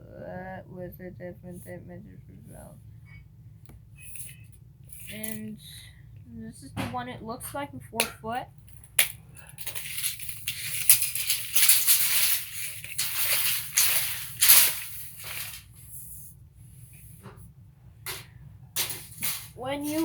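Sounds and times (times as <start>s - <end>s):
tape measure blade rattling: 4.0s - 5.4s, 8.7s - 15.7s, 18.8s - 20.0s.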